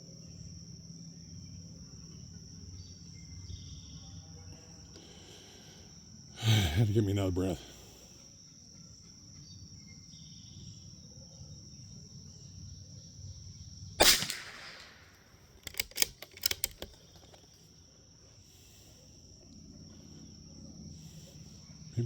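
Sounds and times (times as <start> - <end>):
rifle shot with echo: 14.0 - 15.8
rifle bolt metallic clicks: 14.0 - 17.6.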